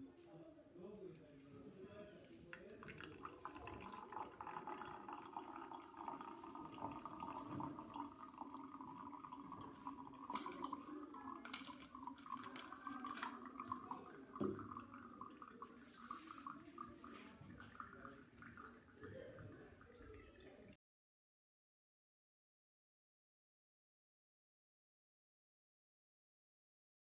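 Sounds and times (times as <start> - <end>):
water running and trickling: 2.3 - 20.7.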